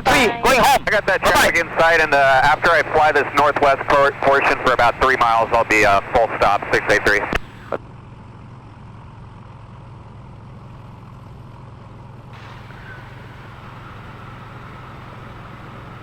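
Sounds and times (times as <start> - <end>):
jet cockpit hum and hiss: 0.0 - 7.8.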